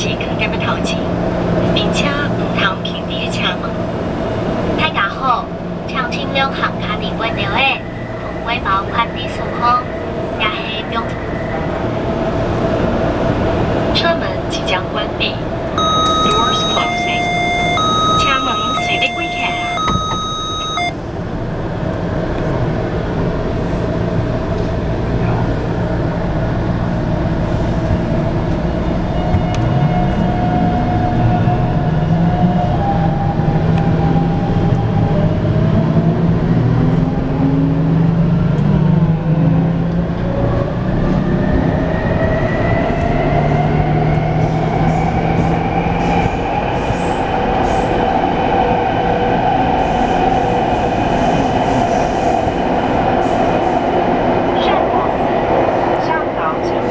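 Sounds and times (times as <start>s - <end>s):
train motors whining: 15.8s - 20.9s
train running gear rumble: 21.0s - 54.5s.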